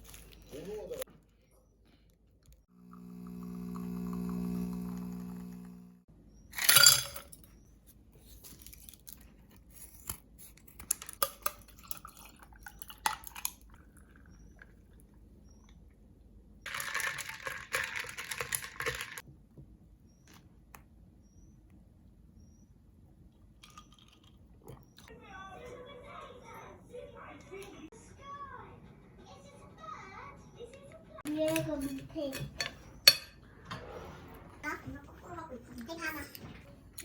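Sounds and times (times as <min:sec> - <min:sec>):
dishes and utensils clinking: 0:31.3 - 0:35.2.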